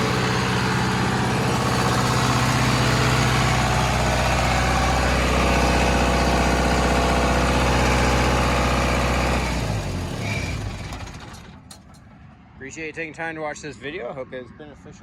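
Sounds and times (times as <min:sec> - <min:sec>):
generator diesel engine: 0:00.0 - 0:12.0.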